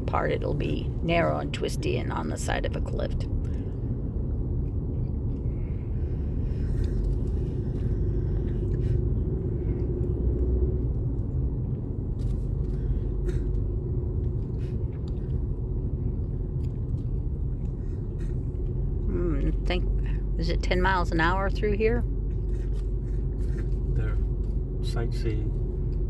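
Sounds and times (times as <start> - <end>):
engine and tyre rumble in cabin: 0.0 - 26.0.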